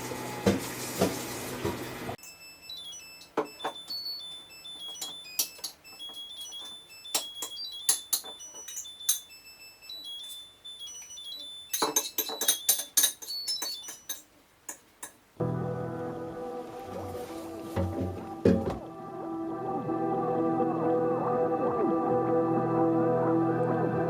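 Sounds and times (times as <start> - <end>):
high-pitched electronic tones: 2.2 - 14.2.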